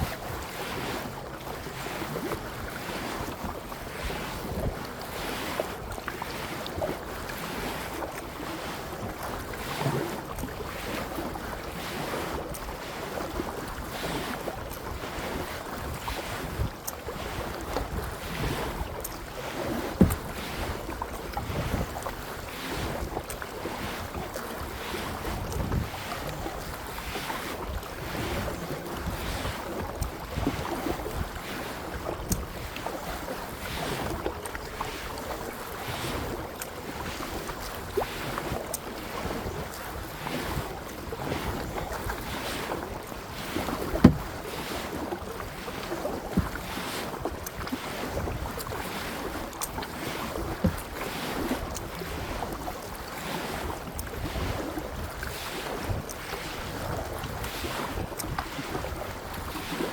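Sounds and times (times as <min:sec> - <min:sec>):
wind noise on microphone: 0:00.0 - 0:12.5, 0:13.2 - 0:52.7, 0:53.6 - 0:59.9
paddle splashing in water: 0:00.0 - 0:59.9.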